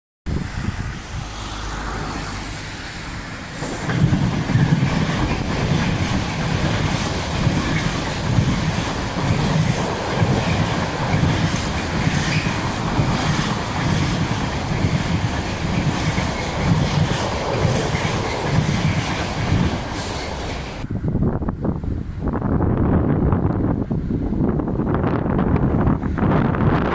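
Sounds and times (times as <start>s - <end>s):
freight train passing: 0.3s - 26.9s
train wheels clattering: 3.2s - 20.8s.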